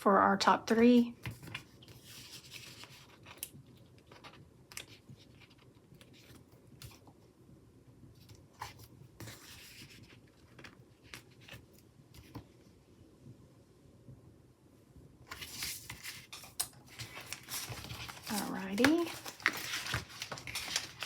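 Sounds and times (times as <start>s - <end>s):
paper rustle: 1.2s - 7.0s, 8.2s - 12.5s, 15.3s - 21.0s
stickers tapping and clicking: 16.3s - 21.0s.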